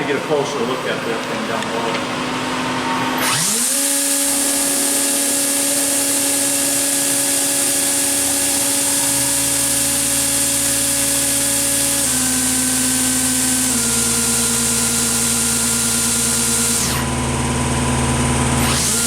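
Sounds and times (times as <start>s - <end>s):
machine spindle high whine: 1.6s - 19.0s
low hum: 4.1s - 13.8s.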